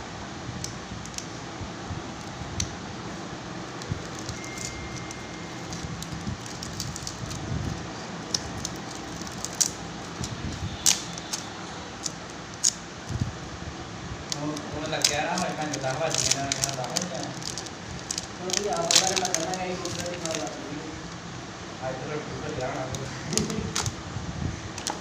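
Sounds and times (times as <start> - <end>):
steady background hum: 0.0 - 25.0
small clicks and crackles: 3.7 - 13.2, 14.3 - 21.2, 22.5 - 24.0.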